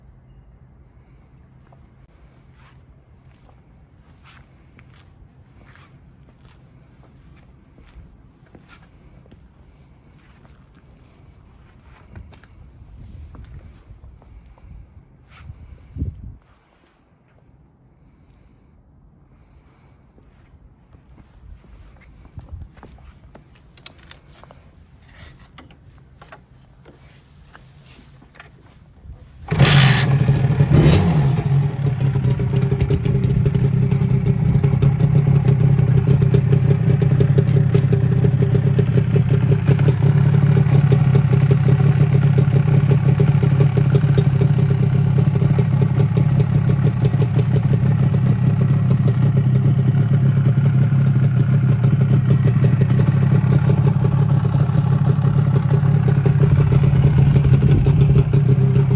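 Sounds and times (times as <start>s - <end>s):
motorcycle engine starting and idling: 29.2s - 58.9s.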